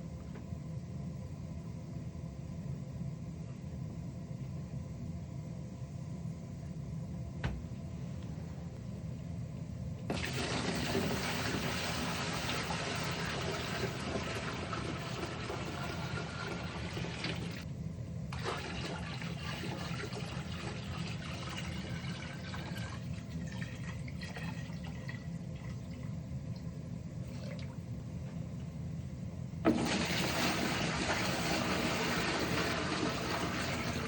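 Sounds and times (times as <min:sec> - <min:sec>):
low steady hum: 0:00.0 - 0:34.0
water running: 0:10.1 - 0:17.6, 0:18.3 - 0:27.8, 0:29.7 - 0:34.0.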